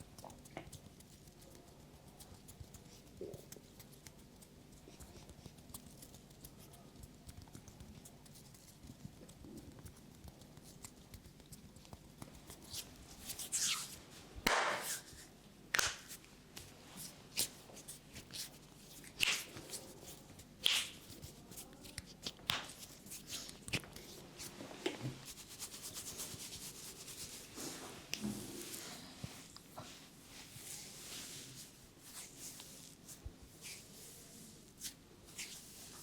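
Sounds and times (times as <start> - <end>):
sharp slaps on head: 14.4 - 15.0, 15.7 - 16.1, 20.6 - 21.0
hands rubbing hair: 25.2 - 36.0.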